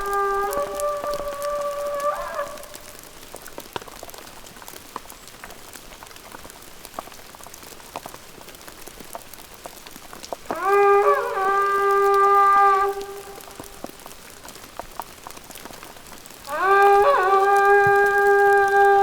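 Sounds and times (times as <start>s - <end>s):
held horn-like tone: 0.0s - 2.7s, 16.5s - 19.0s.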